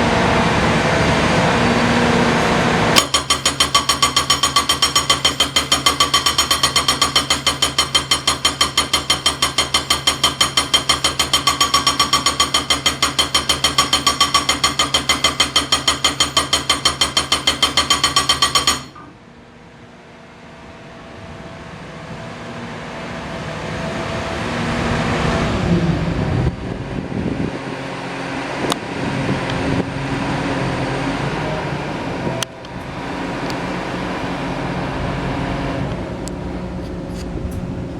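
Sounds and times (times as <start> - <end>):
steady machine noise: 0.0 - 19.0
hydraulic breaker hammering: 2.3 - 19.1.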